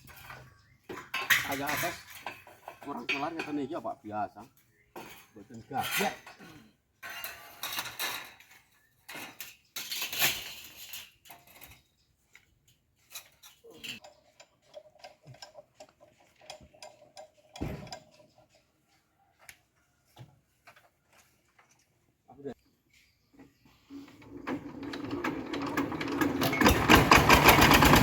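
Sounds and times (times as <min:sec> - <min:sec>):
thump: 0:17.6 - 0:18.0.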